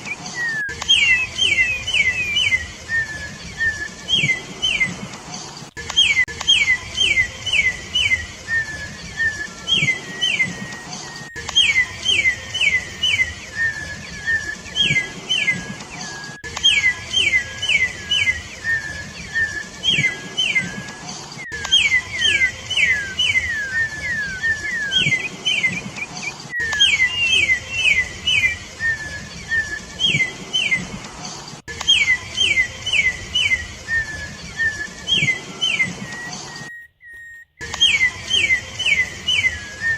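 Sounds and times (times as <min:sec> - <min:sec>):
bird singing descending whistles: 0:00.0 - 0:05.1, 0:05.7 - 0:31.0, 0:31.6 - 0:39.9
low drawn-out whistle: 0:18.3 - 0:30.3, 0:31.9 - 0:39.9.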